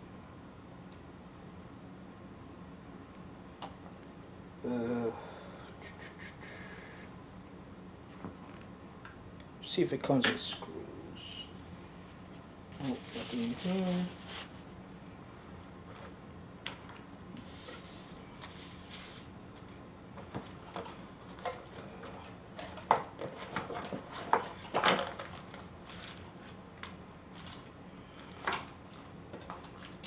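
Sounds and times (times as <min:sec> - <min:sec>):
hands rummaging through packaging: 0:12.8 - 0:14.6, 0:22.6 - 0:30.0.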